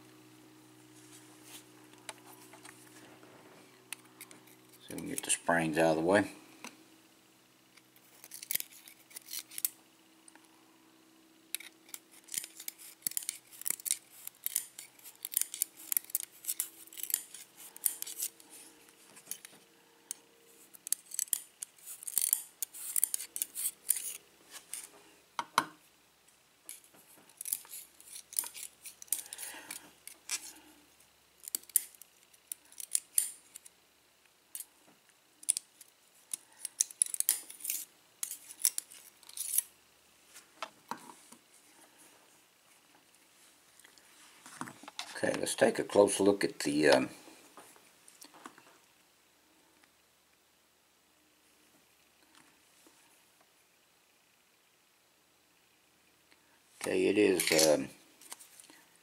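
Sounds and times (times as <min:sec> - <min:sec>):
metal tools clicking and scraping: 0:11.5 - 0:18.5, 0:20.1 - 0:24.9, 0:26.7 - 0:30.6, 0:31.4 - 0:33.7, 0:35.4 - 0:39.7, 0:57.3 - 0:57.9.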